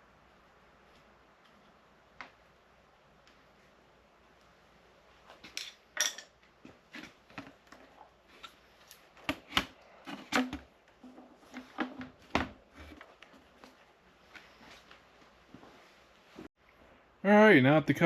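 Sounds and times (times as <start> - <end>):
metal parts and tools clinking: 5.5 - 6.4.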